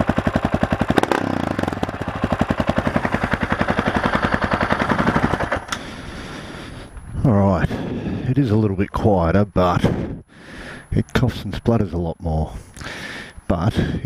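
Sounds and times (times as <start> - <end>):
motorcycle engine spluttering: 0.0 - 5.9.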